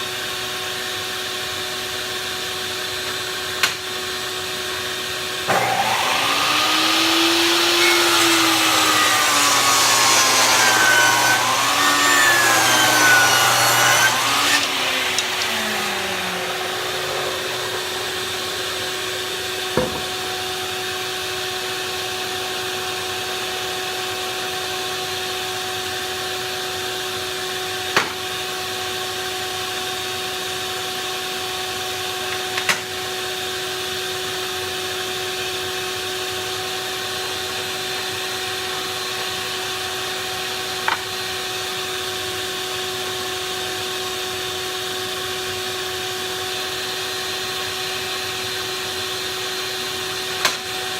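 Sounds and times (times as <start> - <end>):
table saw whining: 0.1 - 50.9
sharp knocks: 19.8 - 20.1.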